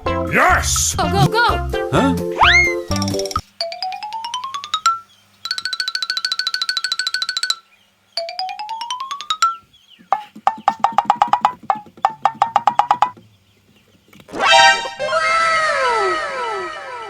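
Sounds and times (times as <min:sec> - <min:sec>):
wood block taps: 0:10.0 - 0:13.2
rising plucked notes: 0:14.3 - 0:17.0.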